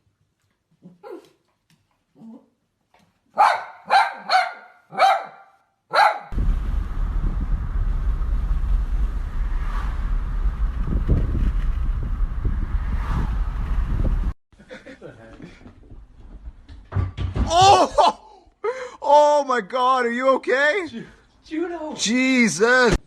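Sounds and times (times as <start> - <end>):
dog barking: 3.4 - 6.3
wind rumble on microphone: 6.3 - 14.4.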